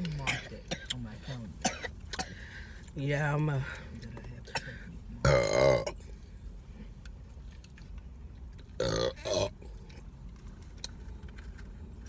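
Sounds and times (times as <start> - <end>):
person burping: 5.2 - 6.0, 8.8 - 9.6.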